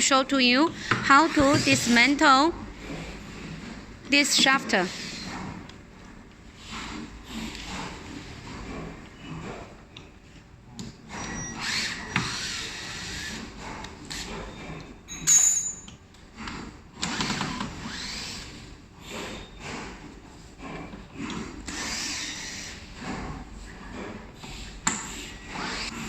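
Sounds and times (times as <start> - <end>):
power drill running: 0.6 - 2.9, 4.7 - 5.5, 11.2 - 13.4, 17.0 - 19.2, 21.7 - 22.8, 25.5 - 26.0.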